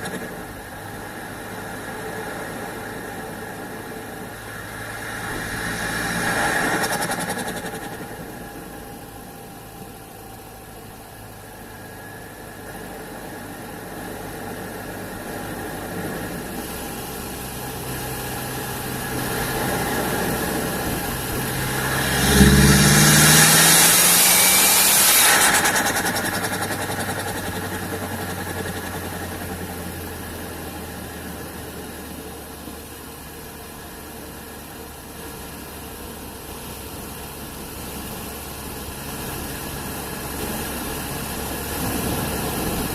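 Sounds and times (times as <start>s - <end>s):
turbocharged engine running: 0.0s - 42.9s
loud rushing intake hiss: 18.9s - 27.0s.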